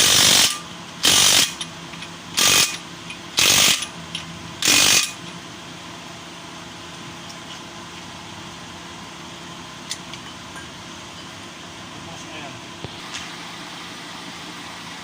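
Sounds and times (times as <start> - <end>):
power tool burst: 0.0 - 1.6, 2.4 - 2.8, 3.4 - 3.9, 4.6 - 5.2.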